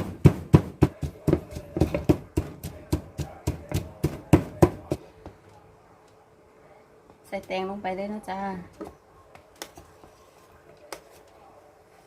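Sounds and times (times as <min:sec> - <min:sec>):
pestle pounding in a mortar: 0:00.0 - 0:05.0.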